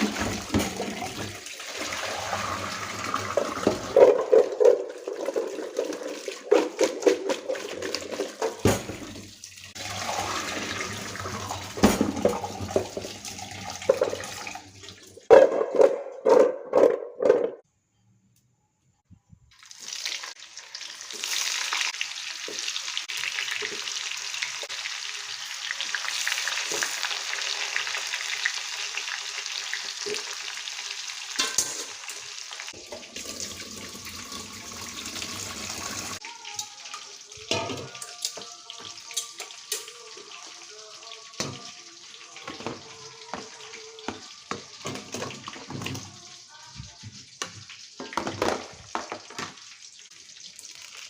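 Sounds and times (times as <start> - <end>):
food frying in hot oil: 19.5 - 37.6, 38.2 - 51.0.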